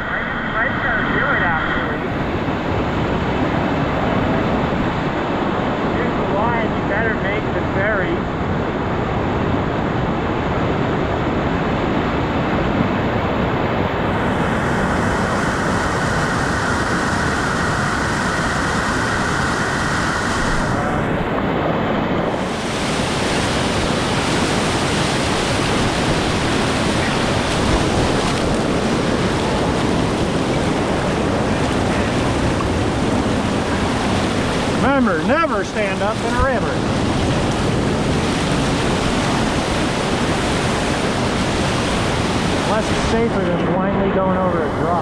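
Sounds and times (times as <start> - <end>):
river rapids rushing: 0.0 - 2.0, 13.5 - 43.8.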